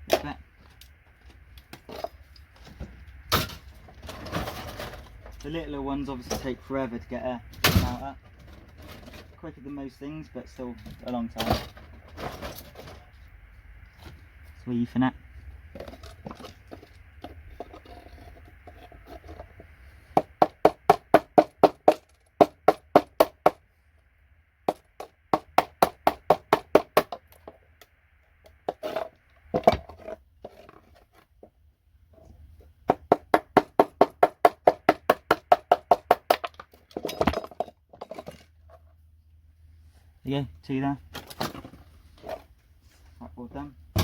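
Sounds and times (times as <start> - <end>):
faint steady hum: 0.0 - 44.0
rapid even knocking: 32.9 - 36.4.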